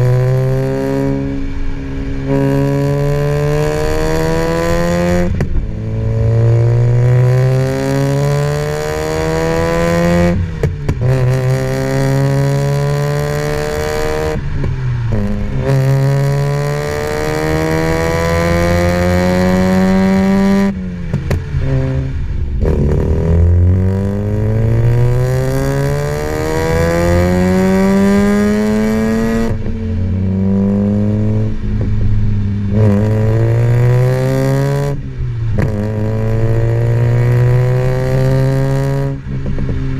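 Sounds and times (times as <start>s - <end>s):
exhaust crackles and pops: 10.4s - 12.1s, 20.9s - 25.6s, 34.8s - 36.5s, 39.1s - 39.9s.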